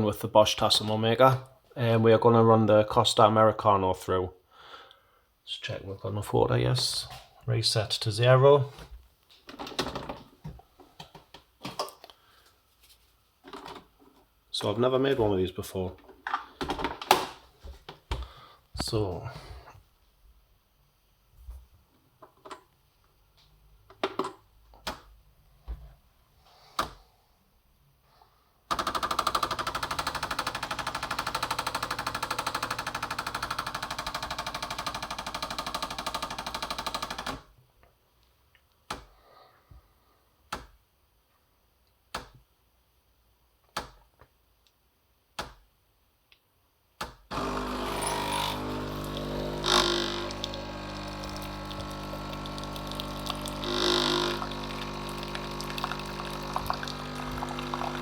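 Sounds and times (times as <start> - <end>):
water pump buzzing: 28.7 - 37.3, 47.3 - 58.0
coffee machine clicks: 47.3 - 58.0.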